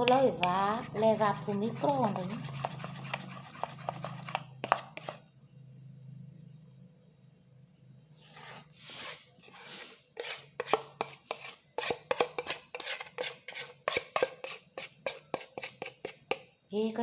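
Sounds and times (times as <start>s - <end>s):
spoon scraping cup: 0.0s - 5.2s, 8.2s - 16.4s.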